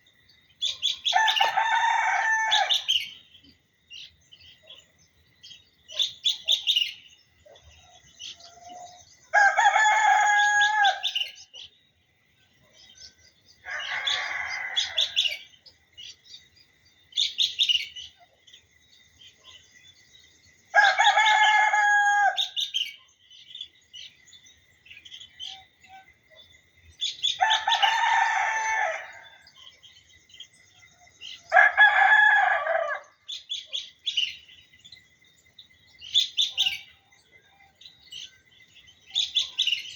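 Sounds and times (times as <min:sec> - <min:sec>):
small birds chirping: 0:00.0 - 0:39.9
rooster crowing: 0:01.1 - 0:03.0, 0:08.4 - 0:11.4, 0:13.6 - 0:15.4, 0:20.8 - 0:22.6, 0:27.4 - 0:29.5, 0:31.5 - 0:33.2.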